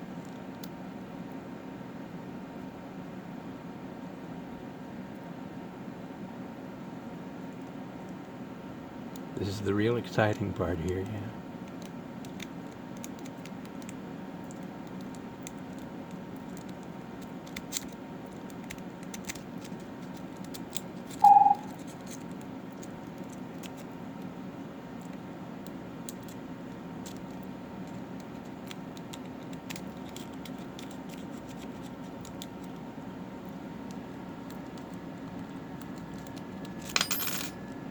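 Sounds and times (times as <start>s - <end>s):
steady low hum: 0.0s - 37.9s
short loud beep: 21.2s - 21.7s
lock pick scratching in padlock: 27.9s - 32.6s.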